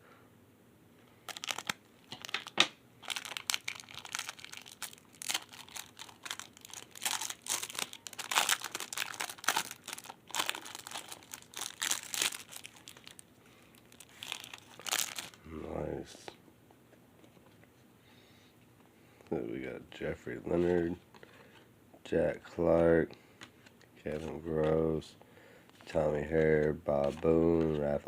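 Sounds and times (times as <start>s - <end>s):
plastic wrapper crinkling: 1.2s - 15.4s.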